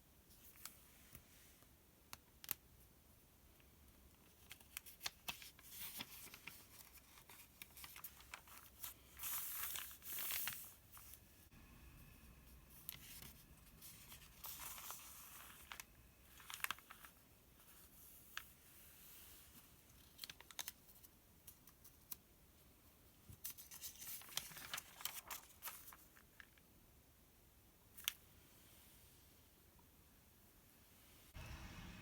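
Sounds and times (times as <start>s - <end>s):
paper pages crinkling: 4.2s - 11.3s, 12.7s - 22.2s, 23.3s - 26.6s.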